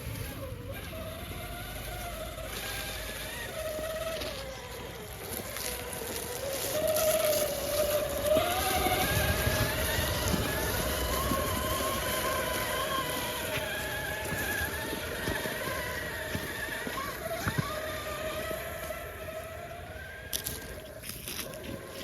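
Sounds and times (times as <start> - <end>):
electric motor whining: 0.0 - 22.0.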